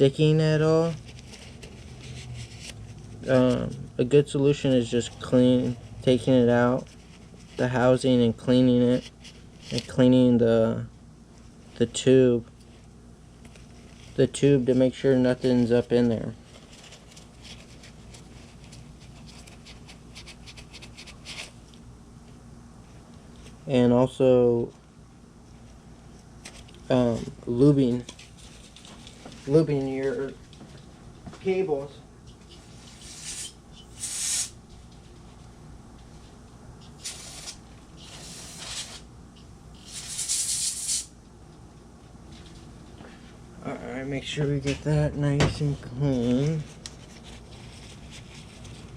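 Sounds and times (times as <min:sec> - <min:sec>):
gloved hands scratching and rubbing: 0:00.8 - 0:03.7, 0:15.6 - 0:21.7, 0:32.6 - 0:34.5, 0:46.2 - 0:48.9
aerosol spray can hissing: 0:33.0 - 0:34.6, 0:37.0 - 0:39.0, 0:39.8 - 0:41.1.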